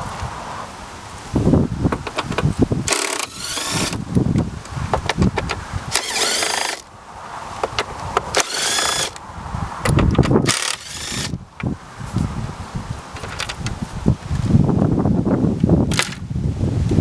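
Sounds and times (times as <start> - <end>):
tools and parts clunking: 1.9 - 6.9, 7.6 - 9.2, 13.2 - 13.8
cordless power tool whirring: 2.0 - 6.9, 7.6 - 9.2, 10.4 - 11.4.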